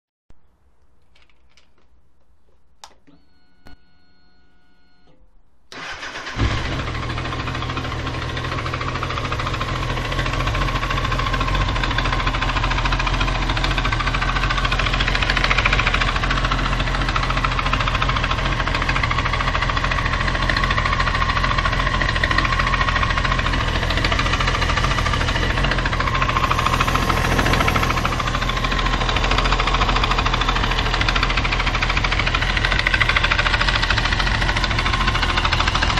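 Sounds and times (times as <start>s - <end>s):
starter cranking: 21.6s - 35.9s
brief steady whine: 26.0s - 29.4s.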